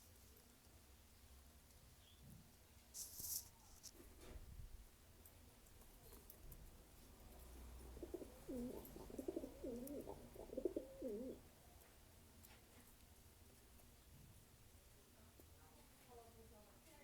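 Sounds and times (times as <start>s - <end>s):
pigeon cooing: 7.2s - 11.4s.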